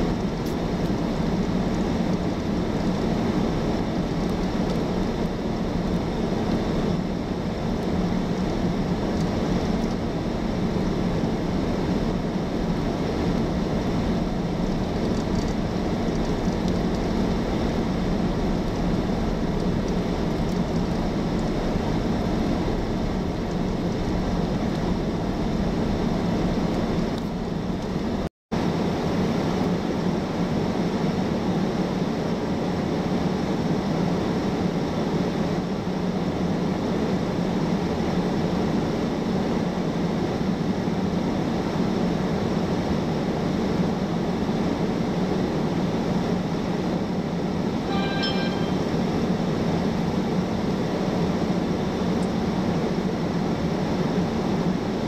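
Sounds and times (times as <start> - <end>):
high chirping: 47.9 - 49.0.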